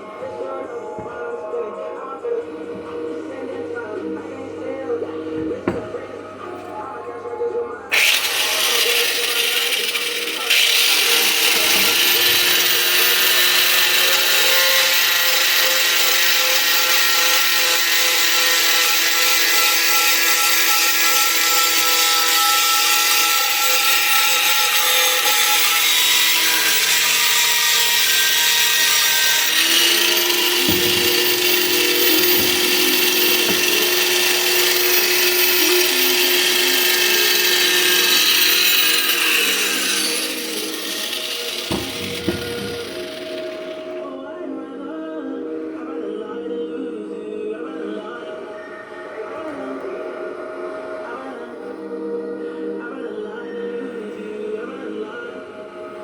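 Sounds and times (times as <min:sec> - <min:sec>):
power tool whining on steel: 0:07.9 - 0:44.1.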